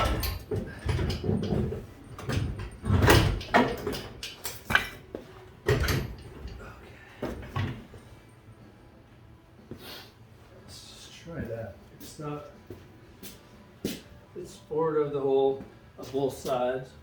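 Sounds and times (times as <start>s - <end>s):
metal knocks and clunks: 0.0s - 6.6s.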